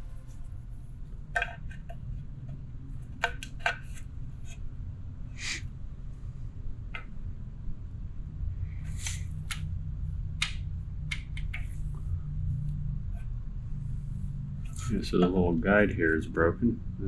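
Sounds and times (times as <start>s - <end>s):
steady low hum: 0.0s - 17.0s
brief scrape: 5.4s - 5.6s, 8.8s - 9.3s.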